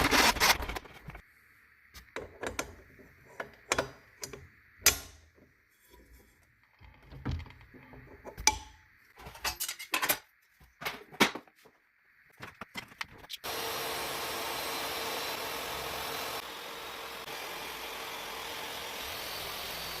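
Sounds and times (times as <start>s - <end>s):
metal tools clicking and knocking: 7.3s - 10.3s.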